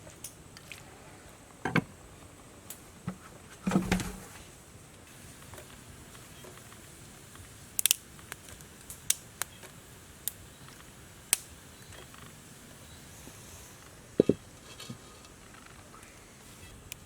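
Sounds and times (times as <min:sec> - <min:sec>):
plant shoots snapping: 0:07.8 - 0:09.6.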